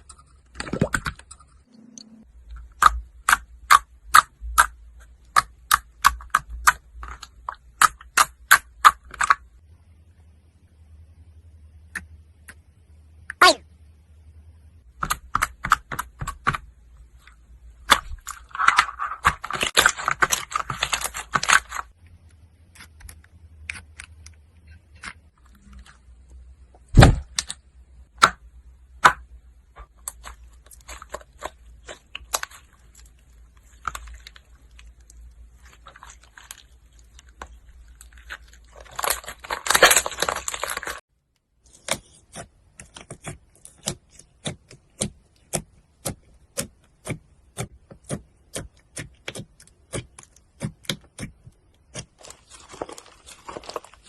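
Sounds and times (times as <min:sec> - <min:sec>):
slime crackling: 0:30.0 - 0:41.0, 0:48.0 - 0:54.0.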